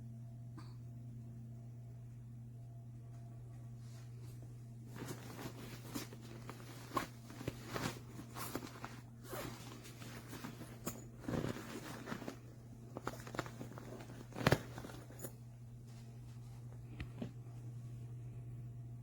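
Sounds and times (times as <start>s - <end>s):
low electrical hum: 0.0s - 19.0s
objects being handled: 4.9s - 17.5s.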